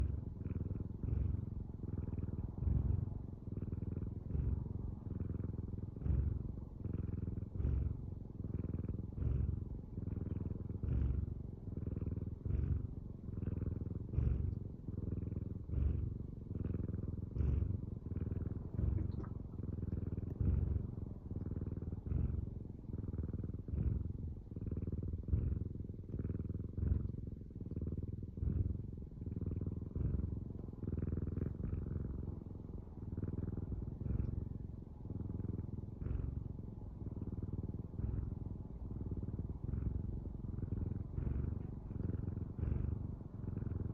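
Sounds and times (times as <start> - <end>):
cat purring: 0.0 - 43.9.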